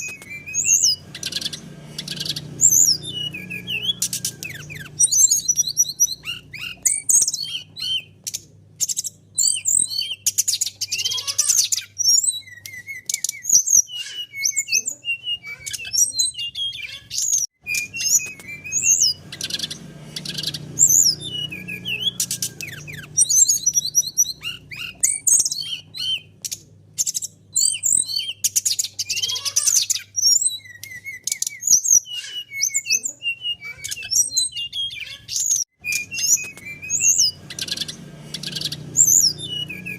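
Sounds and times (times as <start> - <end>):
bird singing varied song: 0.0 - 39.9.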